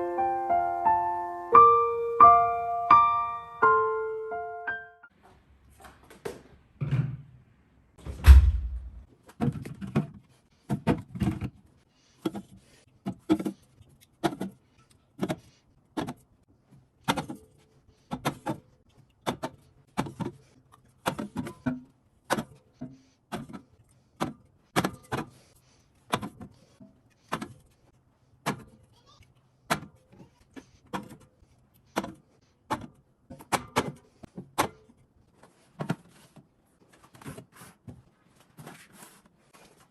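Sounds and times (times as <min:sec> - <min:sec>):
heavy thump: 0:08.1 - 0:09.1
groceries knocking and clattering: 0:09.0 - 0:28.9, 0:29.6 - 0:39.9.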